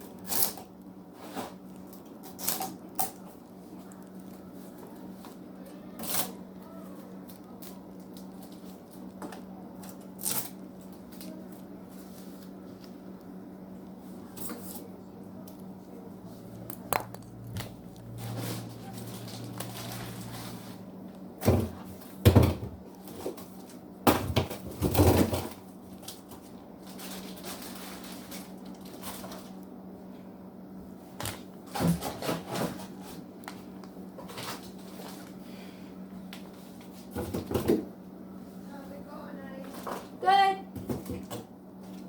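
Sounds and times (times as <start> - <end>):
steady low hum: 0.0 - 42.0
packaging rustling: 16.7 - 20.7, 26.0 - 29.6
knocks and clunks of containers: 21.4 - 26.4, 37.0 - 37.9, 39.7 - 41.5.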